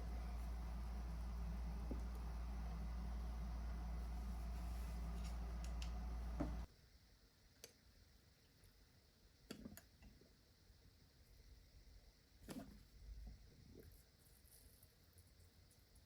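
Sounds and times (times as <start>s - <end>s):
steady low hum: 0.0s - 6.7s.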